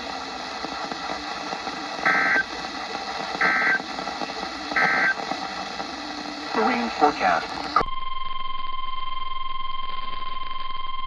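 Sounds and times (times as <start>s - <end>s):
radio hiss: 6.4s - 7.9s.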